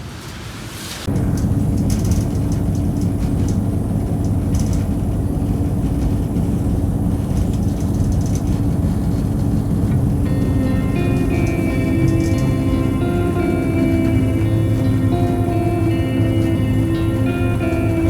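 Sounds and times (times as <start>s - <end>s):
vehicle rumble: 0.0s - 18.0s
faint clicks and rattles: 1.1s - 18.0s.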